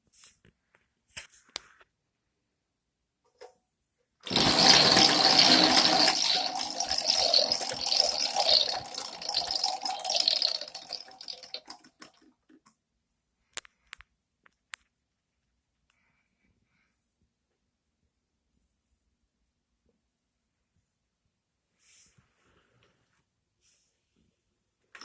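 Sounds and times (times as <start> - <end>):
spinning object whirring: 4.2 - 12.1.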